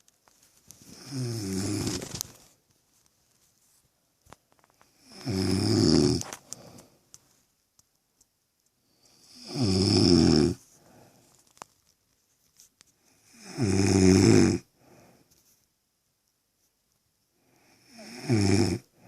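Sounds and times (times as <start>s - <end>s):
woman snoring: 0.9s - 2.1s, 5.0s - 6.3s, 9.2s - 10.6s, 13.2s - 14.7s, 17.7s - 19.0s
faint breath: 6.3s - 7.2s, 10.6s - 11.5s, 14.7s - 15.5s.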